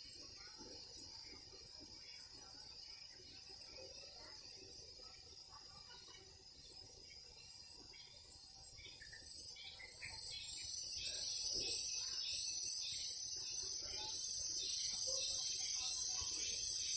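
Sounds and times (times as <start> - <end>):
cicadas buzzing: 9.4 - 16.9.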